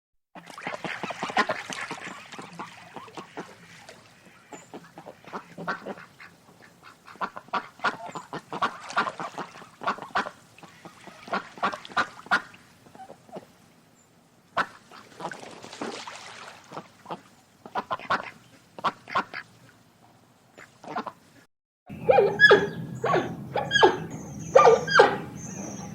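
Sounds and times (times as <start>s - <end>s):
flock of birds calling: 21.9s - 25.9s.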